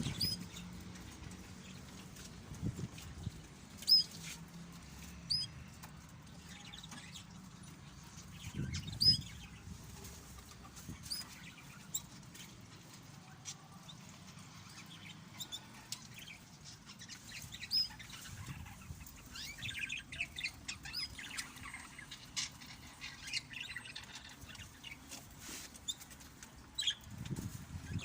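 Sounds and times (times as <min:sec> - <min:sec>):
small birds chirping: 0:00.0 - 0:28.0.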